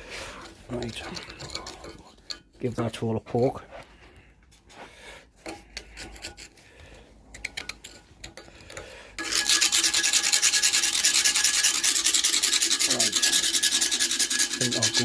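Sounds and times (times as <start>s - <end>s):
wire brush scraping metal: 5.4s - 6.6s, 7.4s - 15.0s.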